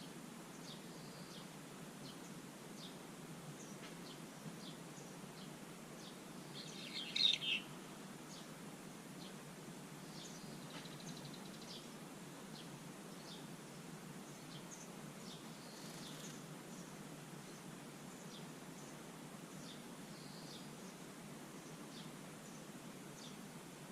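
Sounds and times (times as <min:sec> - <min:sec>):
distant birds chirping: 0:03.6 - 0:23.5
bird harsh call: 0:06.6 - 0:07.7.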